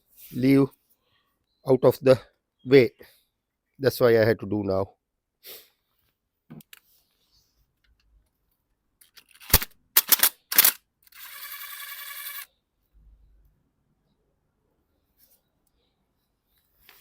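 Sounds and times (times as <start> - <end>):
tools clicking and knocking: 9.0 - 11.2.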